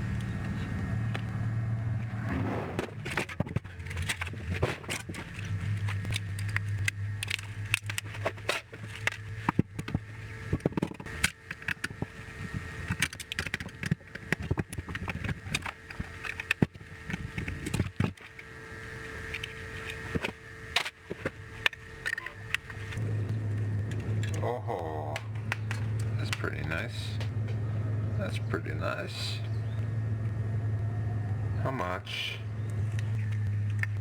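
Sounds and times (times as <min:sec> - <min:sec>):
low steady hum: 0:00.0 - 0:34.0
hand tools clicking and scraping: 0:02.8 - 0:27.6.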